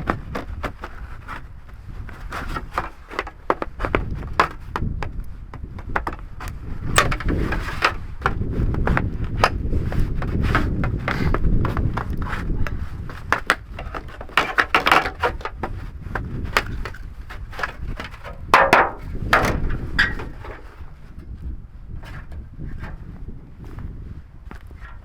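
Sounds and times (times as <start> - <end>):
timber scraping: 0.0 - 23.8
wooden knocks and clatter: 2.1 - 21.0.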